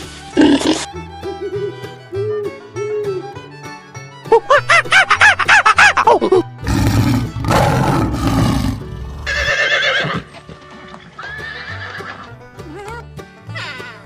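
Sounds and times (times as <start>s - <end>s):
background music: 0.0s - 14.0s
horse neighing: 6.6s - 10.3s, 11.2s - 12.3s.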